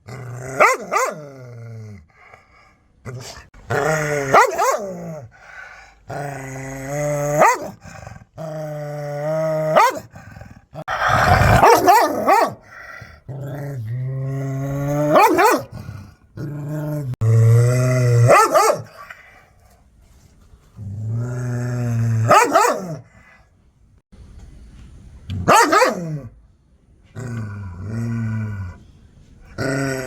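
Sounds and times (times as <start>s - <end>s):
dog barking: 0.6s - 1.2s, 4.3s - 4.9s, 7.4s - 7.8s, 9.7s - 10.1s, 10.9s - 12.7s, 15.1s - 15.7s, 18.3s - 19.0s, 22.3s - 23.0s, 25.5s - 26.2s
dog growling: 3.1s - 19.1s.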